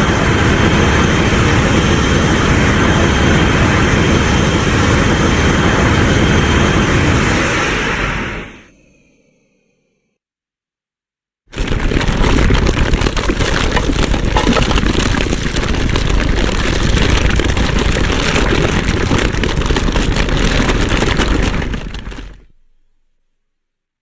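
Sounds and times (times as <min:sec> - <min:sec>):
crackling rumbling monster roar: 0:11.5 - 0:22.4.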